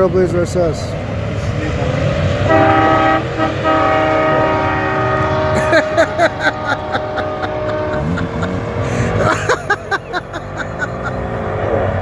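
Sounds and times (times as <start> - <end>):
engines revving: 0.0 - 12.0
air horn chord: 2.5 - 9.2.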